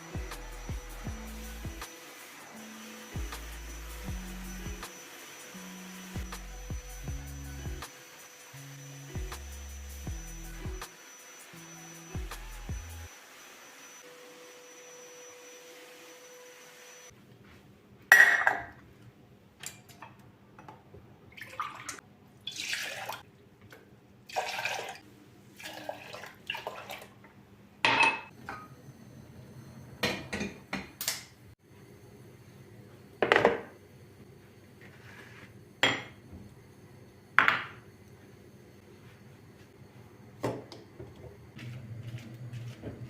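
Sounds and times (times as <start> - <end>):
dishes and utensils clinking: 27.9 - 28.7.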